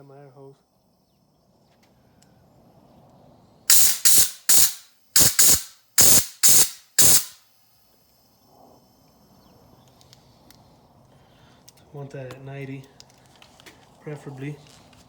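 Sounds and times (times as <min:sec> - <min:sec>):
compressed air hissing from hose: 0:03.7 - 0:07.4.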